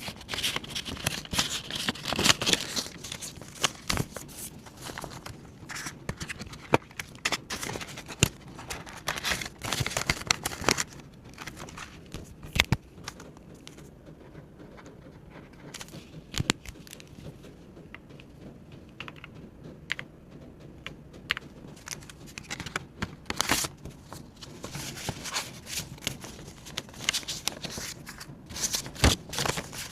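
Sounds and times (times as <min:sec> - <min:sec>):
paper rustling and crinkling: 0:00.0 - 0:17.4, 0:21.4 - 0:29.9
sharp clicks and taps: 0:02.2 - 0:24.8.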